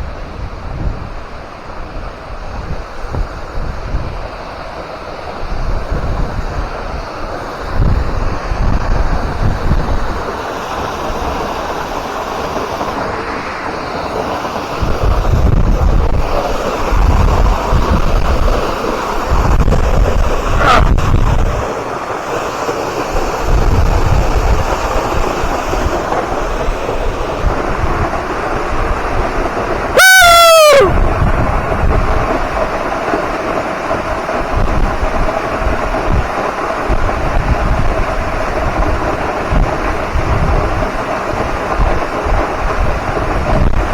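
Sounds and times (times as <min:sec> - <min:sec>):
wind buffeting microphone: 0:00.0 - 0:22.2, 0:23.0 - 0:43.9
water rushing: 0:00.0 - 0:43.9
high-pitched falling cry: 0:30.0 - 0:31.0.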